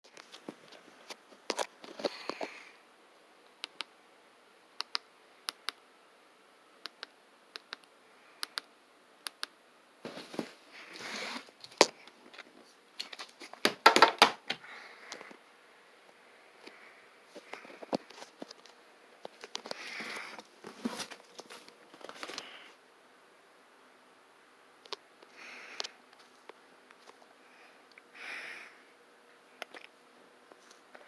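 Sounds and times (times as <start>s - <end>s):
sharp clicks: 4.8s - 5.8s, 6.8s - 9.6s
rustling handling noise: 10.0s - 15.4s, 17.3s - 22.7s.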